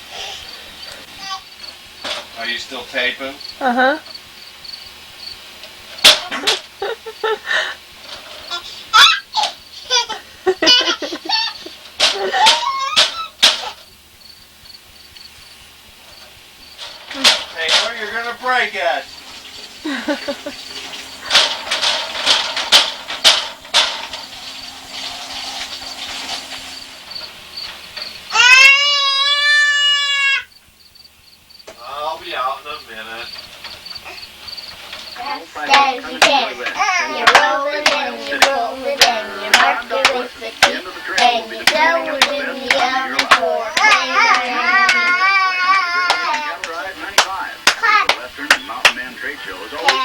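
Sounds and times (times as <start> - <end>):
baby squealing and laughing: 8.5 - 11.7, 12.3 - 13.4, 28.3 - 30.5, 43.8 - 46.6
high steady squeal: 16.2 - 28.4
sharp knocks: 20.4 - 28.2.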